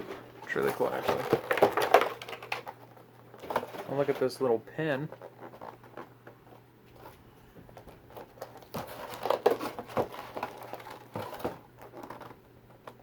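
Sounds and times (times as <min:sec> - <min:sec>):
faint steady hum: 0:00.0 - 0:13.0
packaging crinkling: 0:00.5 - 0:04.2, 0:07.7 - 0:13.0.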